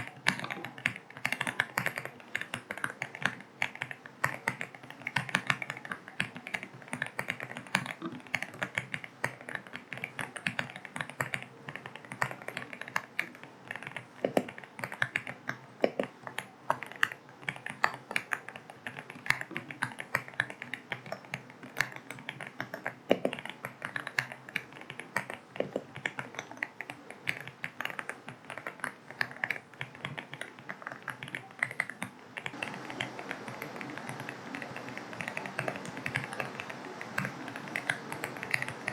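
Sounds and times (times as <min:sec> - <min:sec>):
rain hiss: 0:32.6 - 0:38.9.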